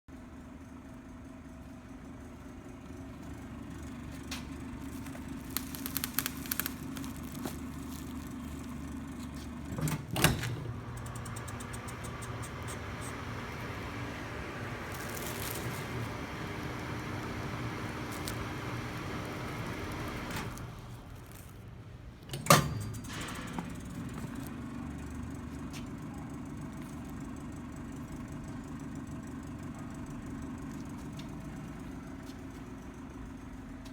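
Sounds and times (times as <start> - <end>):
shrink-wrapping machine hum: 2.7 - 33.8
loud machine clunk: 22.3 - 23.8.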